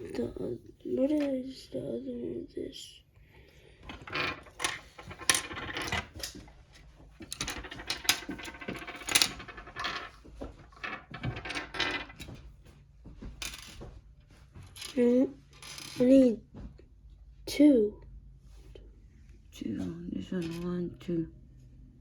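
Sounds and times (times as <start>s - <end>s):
plastic parts clicking and clattering: 3.8s - 12.4s.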